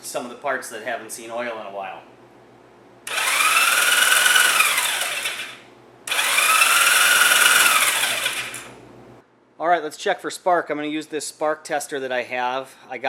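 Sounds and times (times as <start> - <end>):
electric starter motor whine: 3.1 - 8.8.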